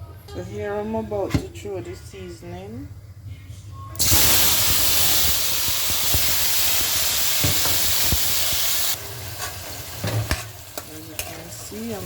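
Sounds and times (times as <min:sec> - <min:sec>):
vegetables sizzling in hot oil: 0:04.0 - 0:12.0.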